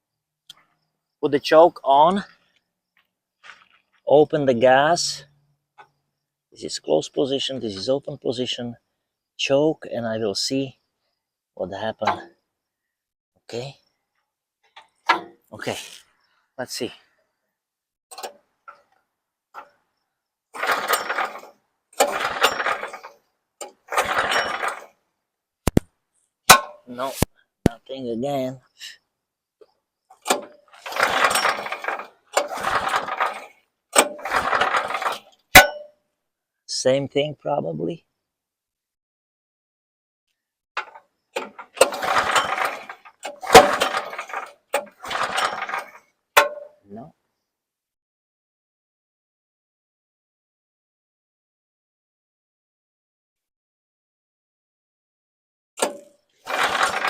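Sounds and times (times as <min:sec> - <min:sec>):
engine pull-start rope rasping: 0:20.5 - 0:25.0, 0:30.1 - 0:35.9, 0:40.8 - 0:46.8, 0:55.8 - 0:57.0
sharp clack: 0:34.0 - 0:35.9.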